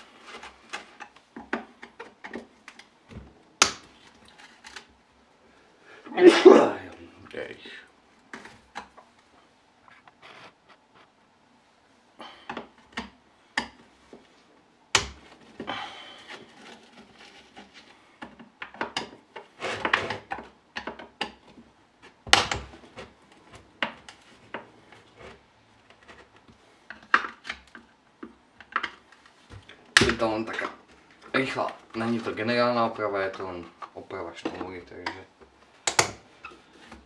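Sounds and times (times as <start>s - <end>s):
scraping and rubbing: 9.8s - 11.2s.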